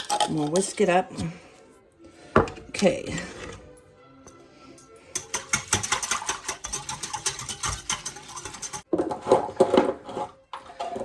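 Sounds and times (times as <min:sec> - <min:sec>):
whisk clicking against container: 0:05.1 - 0:08.8.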